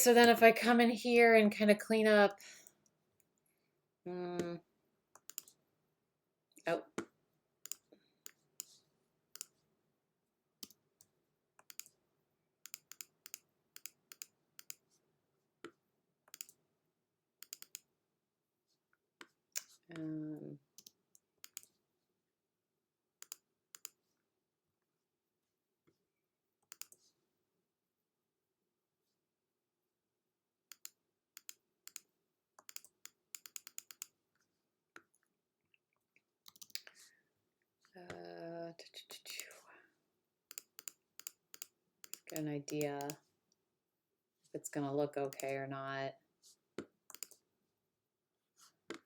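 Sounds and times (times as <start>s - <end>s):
computer mouse clicking: 5.2s - 5.6s, 7.6s - 8.8s, 9.4s - 9.6s, 11.6s - 12.0s, 12.6s - 14.8s, 16.3s - 16.6s, 17.4s - 17.9s, 19.5s - 19.8s, 20.8s - 21.8s, 23.2s - 24.0s, 26.6s - 27.1s, 30.7s - 34.2s, 36.4s - 37.0s, 40.5s - 43.1s, 45.3s - 45.5s, 47.1s - 47.4s.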